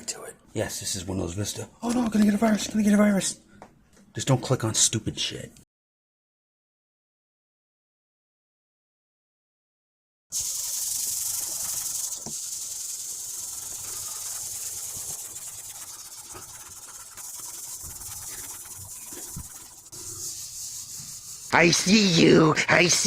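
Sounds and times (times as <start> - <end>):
aerosol can spraying: 10.3 - 22.4.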